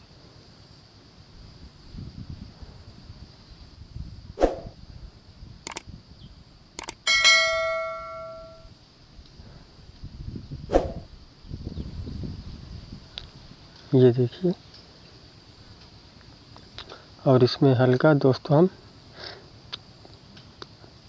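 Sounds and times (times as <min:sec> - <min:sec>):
small tools clicking on surface: 0:05.6 - 0:05.9, 0:06.8 - 0:07.1
loud ringing metallic clang: 0:07.1 - 0:08.7.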